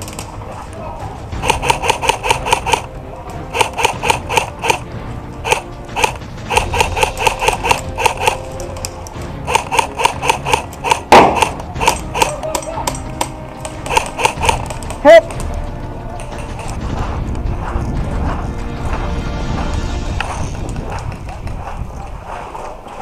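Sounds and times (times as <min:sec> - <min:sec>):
airsoft guns firing bursts: 0:01.4 - 0:02.9, 0:03.5 - 0:08.7, 0:09.4 - 0:15.0.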